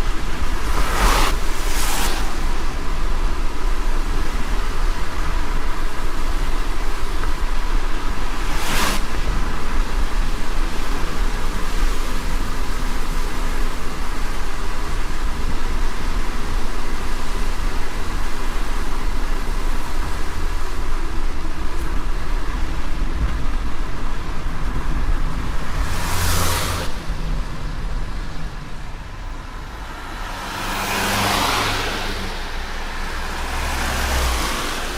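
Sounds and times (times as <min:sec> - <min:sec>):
rain and wet tyres hissing: 0:00.0 - 0:34.9
vehicles passing on wet road: 0:00.0 - 0:34.9
low engine rumble: 0:09.1 - 0:34.9.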